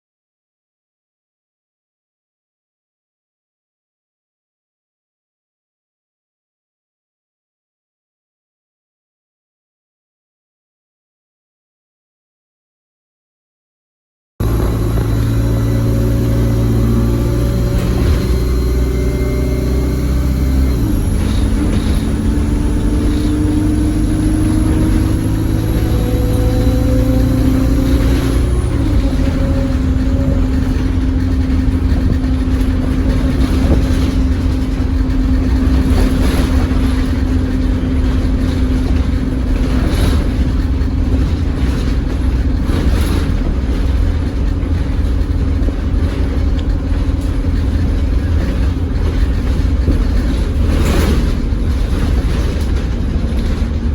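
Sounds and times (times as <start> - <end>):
bus engine whining and droning: 14.4 - 53.9
knocks and rattles: 20.5 - 53.9.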